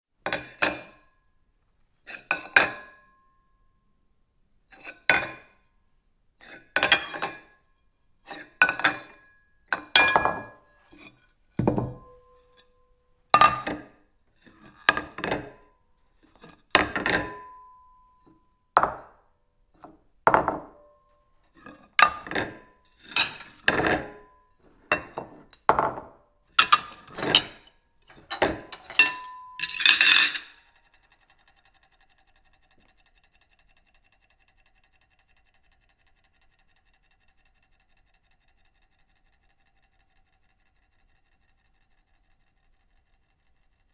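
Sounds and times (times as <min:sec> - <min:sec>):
ceramic plates clinking: 0:26.6 - 0:30.6.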